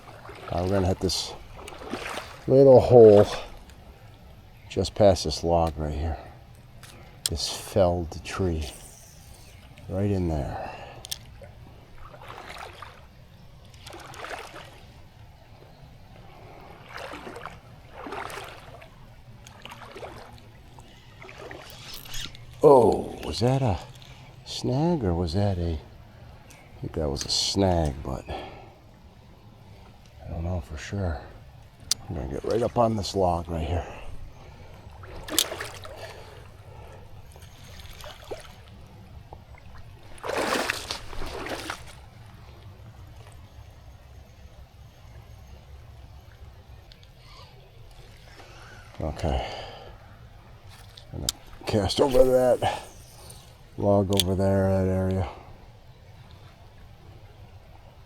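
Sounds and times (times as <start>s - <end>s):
scuffling splashing at water's edge: 0.0s - 3.7s, 13.8s - 14.8s, 16.9s - 18.9s, 39.7s - 42.1s, 50.7s - 54.4s
water swishing and sloshing: 0.0s - 44.6s, 45.2s - 58.0s
low rumble of river water: 0.0s - 58.0s.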